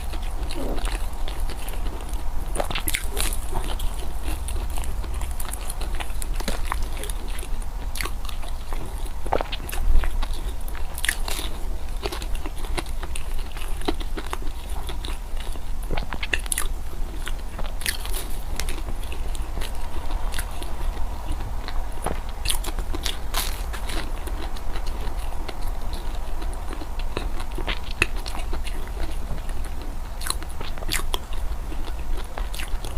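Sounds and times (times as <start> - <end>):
chewing and crunching food: 0.0 - 32.9
steady low hum: 0.0 - 32.9.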